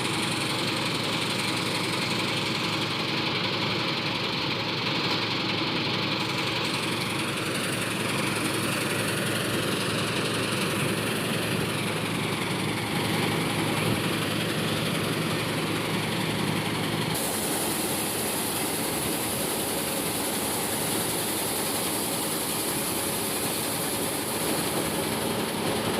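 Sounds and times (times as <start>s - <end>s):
diesel engine running: 0.0s - 25.9s.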